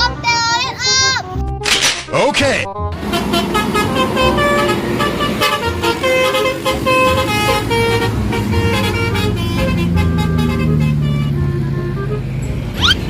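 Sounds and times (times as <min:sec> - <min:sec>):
bus engine running: 0:02.8 - 0:13.0
bus horn playing tune: 0:02.8 - 0:13.0.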